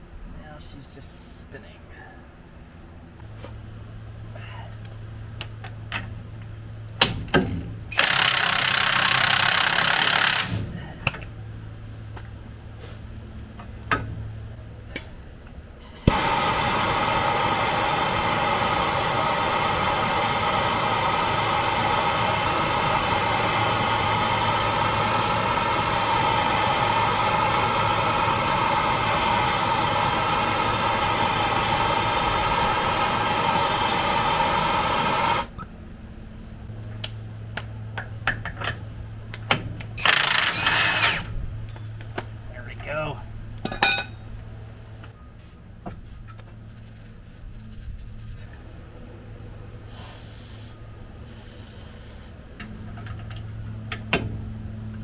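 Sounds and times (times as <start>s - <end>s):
power tool running: 7.9s - 10.6s, 15.8s - 35.5s, 40.0s - 41.3s.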